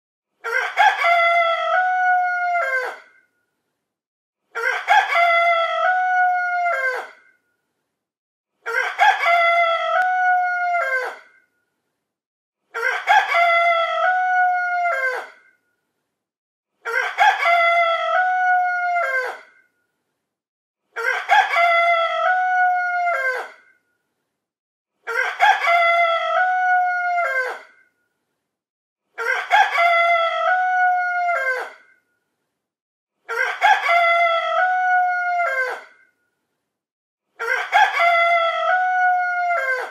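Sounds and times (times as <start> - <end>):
rooster crowing: 0.5 - 3.2, 4.6 - 7.2, 8.7 - 11.4, 12.8 - 15.4, 16.9 - 19.6, 21.0 - 23.7, 25.1 - 27.7, 29.2 - 31.8, 33.3 - 36.0, 37.4 - 39.9.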